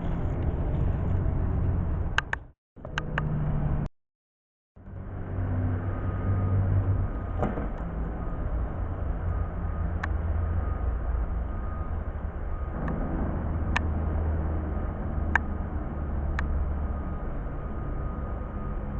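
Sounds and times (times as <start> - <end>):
low vehicle rumble with hum: 0.0 - 3.9, 4.8 - 18.9
sharp clicks: 2.2 - 3.3.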